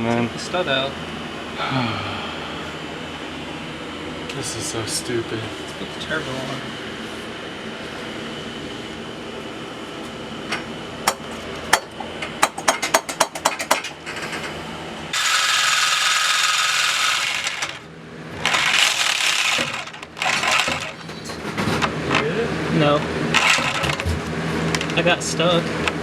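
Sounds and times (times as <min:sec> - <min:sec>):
metal clinks and knocks: 0:11.1 - 0:14.5
power cutting tool on metal: 0:15.1 - 0:17.8, 0:18.4 - 0:21.0.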